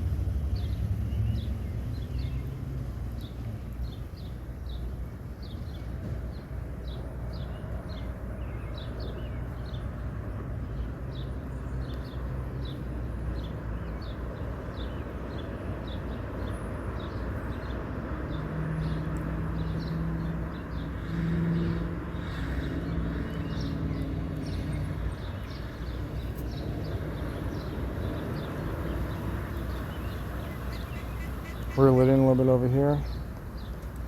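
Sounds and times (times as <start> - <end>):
bird chirping: 22.2 - 33.9.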